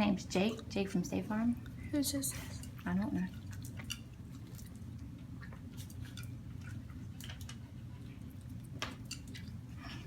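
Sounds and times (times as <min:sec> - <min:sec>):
parrot chick feeding squishes: 0:02.5 - 0:09.8.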